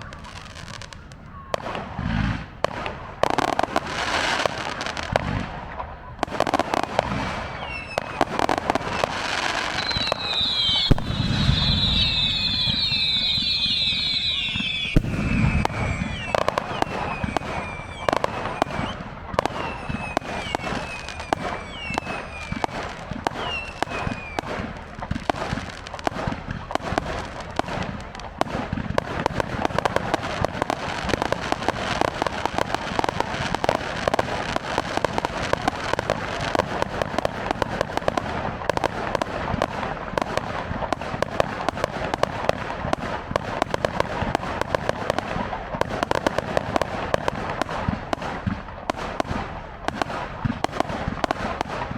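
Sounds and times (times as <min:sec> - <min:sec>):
fireworks bangs and crackles: 0:00.0 - 0:51.9
firework whistles falling in pitch: 0:06.4 - 0:25.3.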